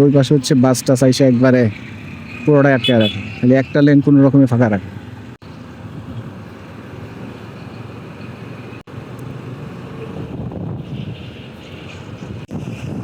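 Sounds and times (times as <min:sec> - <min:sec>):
traffic engine rumble: 0:00.0 - 0:13.0
wind buffeting microphone: 0:09.6 - 0:13.0.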